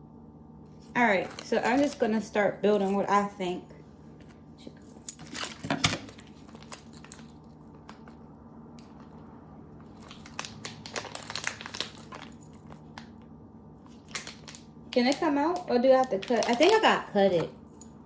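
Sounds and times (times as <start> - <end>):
faint steady hum: 0.0 - 18.0
plastic packaging crinkling: 0.8 - 3.1, 4.6 - 8.2, 9.8 - 13.2, 13.8 - 17.8.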